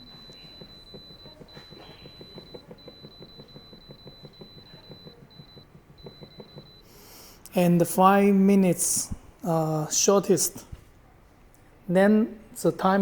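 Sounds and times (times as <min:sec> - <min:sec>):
control panel beeping: 0:00.0 - 0:07.0
faint steady high tone: 0:00.0 - 0:07.1.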